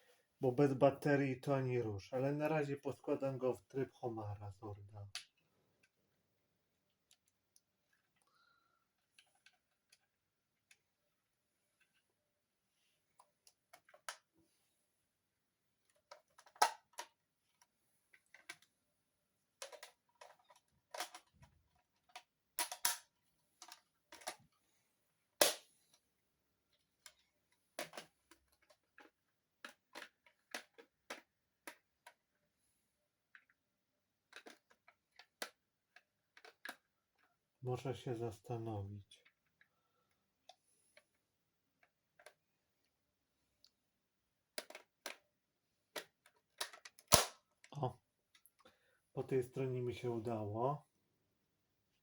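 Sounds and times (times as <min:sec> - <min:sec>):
plastic toy parts clicking: 0:15.8 - 0:18.7, 0:19.6 - 0:24.5, 0:27.8 - 0:32.4, 0:34.3 - 0:37.3, 0:41.8 - 0:42.4, 0:44.6 - 0:45.2, 0:45.9 - 0:48.6.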